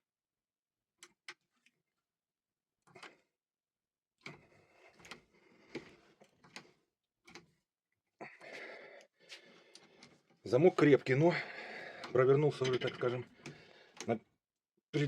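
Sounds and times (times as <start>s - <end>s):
pick tool clicking and scraping in lock: 4.2s - 7.6s.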